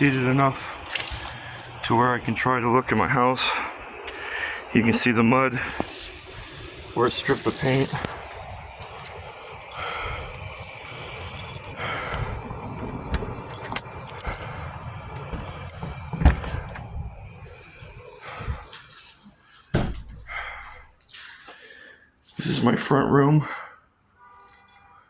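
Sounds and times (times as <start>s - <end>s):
keys jangling: 8.2s - 20.8s, 24.4s - 24.9s.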